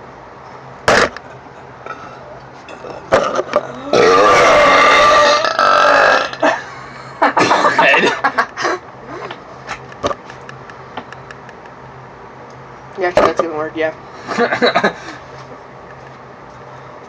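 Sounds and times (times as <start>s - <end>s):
boy burping loudly: 3.1s - 6.6s.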